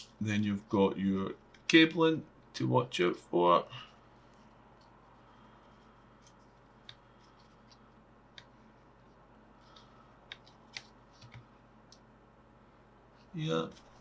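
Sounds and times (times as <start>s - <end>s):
plastic laptop parts clicking: 9.7s - 11.4s.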